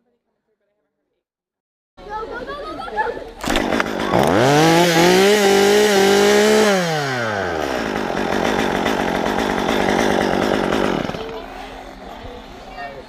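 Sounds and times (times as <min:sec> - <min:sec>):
chainsaw revving: 0:03.4 - 0:12.7
rough unpitched rattle: 0:06.6 - 0:12.3.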